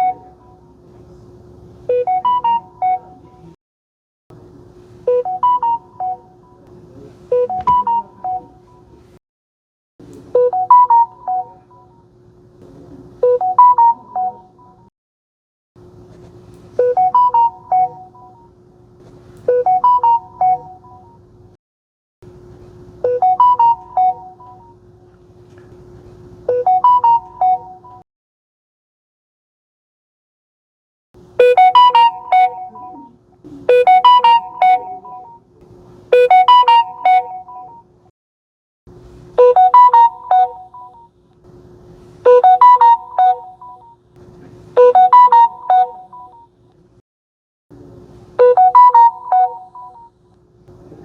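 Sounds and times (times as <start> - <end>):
faint steady hum: 31.2 - 38.1
phone notification chime: 31.4 - 33.1, 33.7 - 35.4, 36.2 - 37.7.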